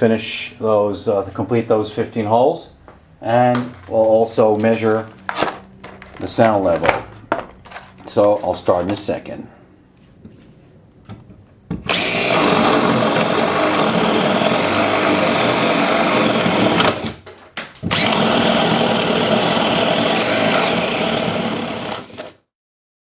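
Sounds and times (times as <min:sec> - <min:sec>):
drill boring into wood: 0:11.9 - 0:17.2, 0:17.8 - 0:22.4.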